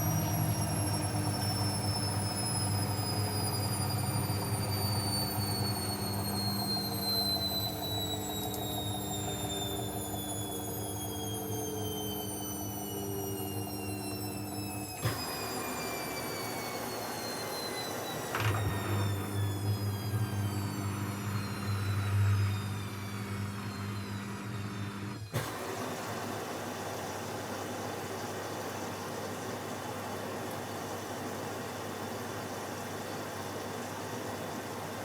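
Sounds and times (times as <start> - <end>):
washing machine motor whining: 0.0 - 35.0
water filling machine: 0.0 - 35.0
click: 8.1 - 8.8.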